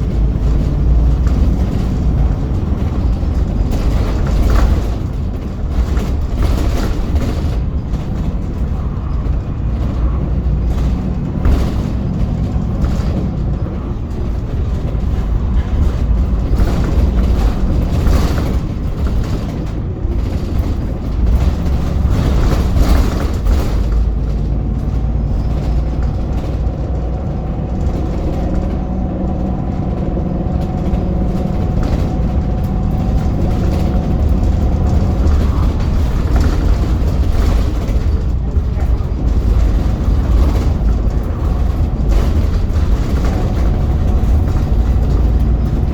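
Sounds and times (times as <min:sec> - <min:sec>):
bus low rumble: 0:00.0 - 0:45.9
knocks and rattles: 0:00.0 - 0:45.9.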